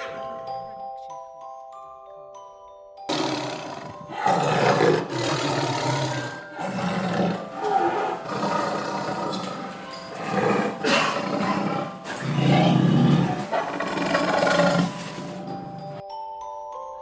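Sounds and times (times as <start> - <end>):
glockenspiel-like mallet notes: 0.0 - 13.6, 14.3 - 17.0
large animal roaring: 3.1 - 15.3.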